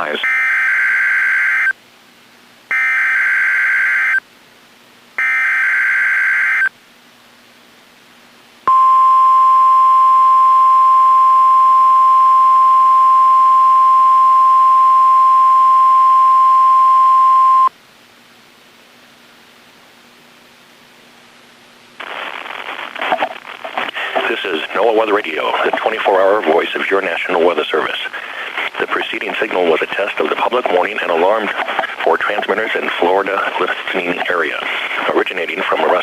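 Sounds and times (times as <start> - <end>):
steady warning alarm tone: 0.2 - 1.8, 2.7 - 4.2, 5.2 - 6.7
data bursts: 22.0 - 26.7.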